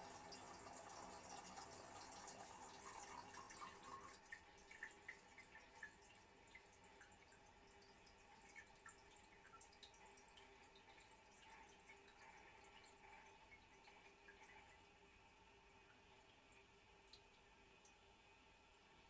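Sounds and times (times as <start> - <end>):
water dripping in toilet: 0.0 - 18.1.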